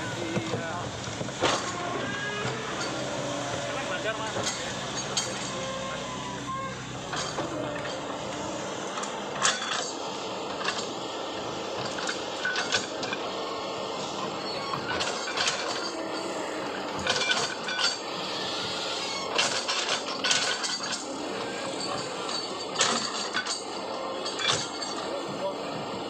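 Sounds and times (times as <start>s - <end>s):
excavator engine and hydraulics: 0.0s - 26.0s
metallic clanks and knocks: 4.2s - 5.8s, 6.5s - 8.1s, 19.3s - 25.1s.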